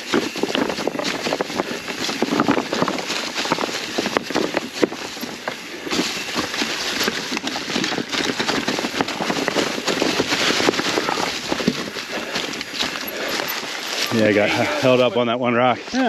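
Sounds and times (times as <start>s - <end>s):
bike knocks and rattles: 0.0s - 14.2s
tyres crackling through leaves: 0.0s - 16.0s.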